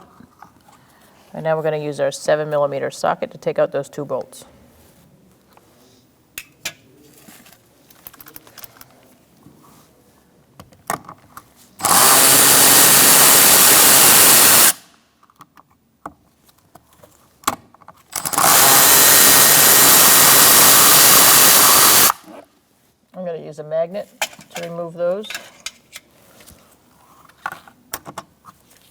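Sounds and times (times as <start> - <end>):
power tool spinning out bolts: 11.8 - 14.8, 18.1 - 22.3.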